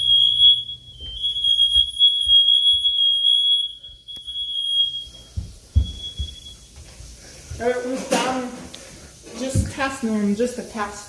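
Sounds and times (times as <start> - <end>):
smoke alarm tone: 0.0 - 6.9.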